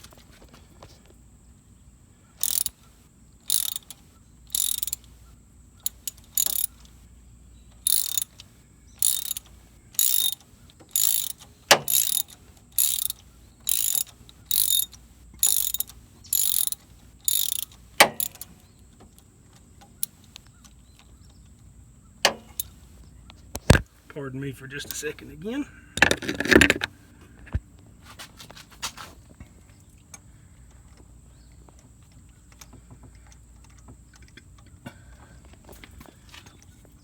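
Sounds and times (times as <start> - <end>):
ratchet wrench clicking: 2.4 - 7.0, 7.8 - 18.7, 22.2 - 22.9.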